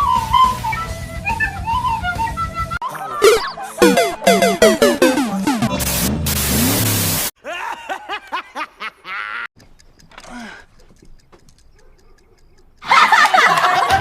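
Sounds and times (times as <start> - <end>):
loud music: 3.2 - 7.3
person giggling: 7.4 - 9.5
faint ticking: 9.6 - 12.8.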